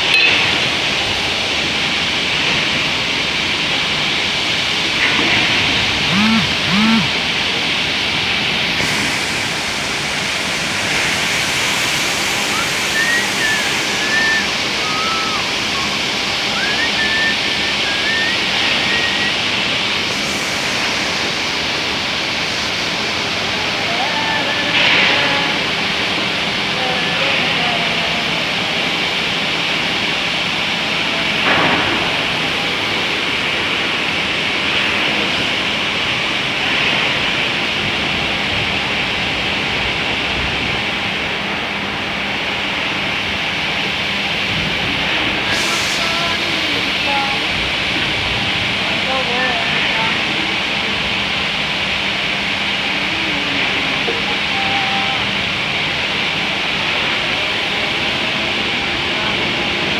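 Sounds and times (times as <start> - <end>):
winch machine running: 0.0 - 59.9
winch machine rushing noise: 8.8 - 23.8.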